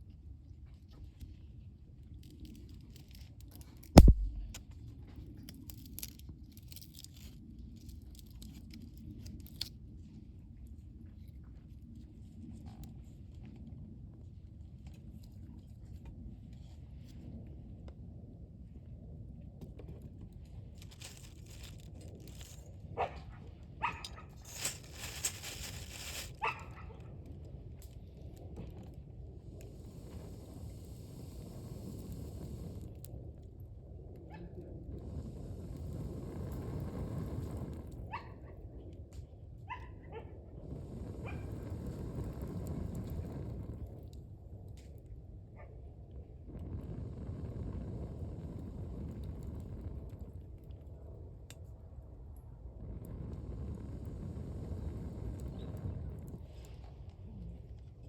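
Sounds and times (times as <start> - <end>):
wood fire crackling: 3.9 - 4.6, 20.7 - 22.8, 23.9 - 26.6
loud thump: 4.0 - 4.6.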